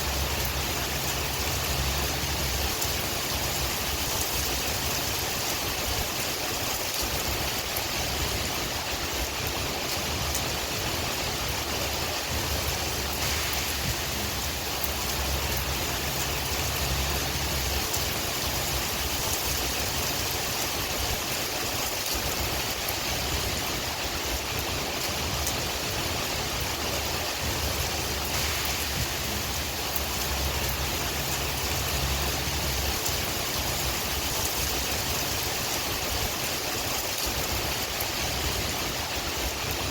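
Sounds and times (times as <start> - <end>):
low wind rumble: 0.0 - 39.9
rain hiss: 0.0 - 39.9
raindrops ticking: 12.4 - 23.6, 26.7 - 39.9.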